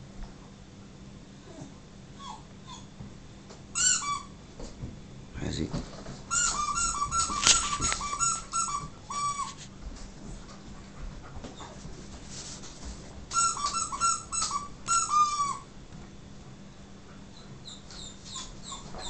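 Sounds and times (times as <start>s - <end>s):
squeaky rubber dog toy: 2.2s - 2.9s, 3.7s - 4.4s, 6.3s - 9.6s, 13.3s - 15.7s.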